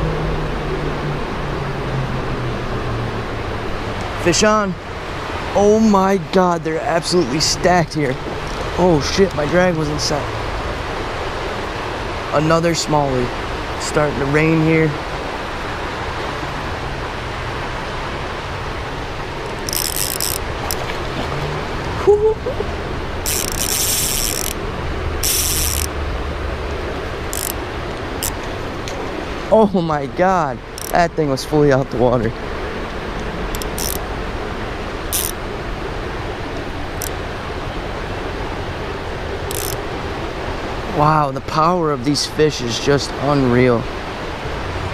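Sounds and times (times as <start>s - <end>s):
creek rushing: 0.0s - 44.9s
fishing reel drag clicking: 19.4s - 20.9s, 23.2s - 24.6s, 25.2s - 25.9s, 27.3s - 27.6s, 28.2s - 28.4s, 30.8s - 31.0s, 33.5s - 34.0s, 35.1s - 35.4s, 39.5s - 39.8s.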